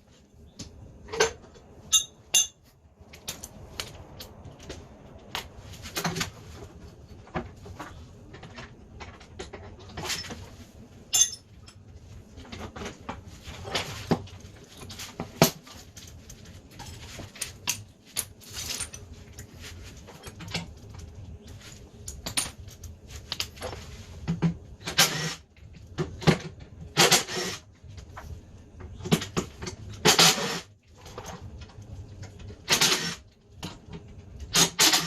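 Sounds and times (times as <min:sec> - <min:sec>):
metal tools clinking and clattering: 0:01.1 - 0:03.5, 0:11.1 - 0:11.8, 0:14.6 - 0:20.8.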